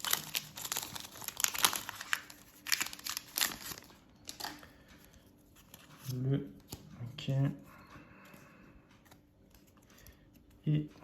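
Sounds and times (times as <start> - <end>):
foil wrapper crinkling: 0.0 - 4.6.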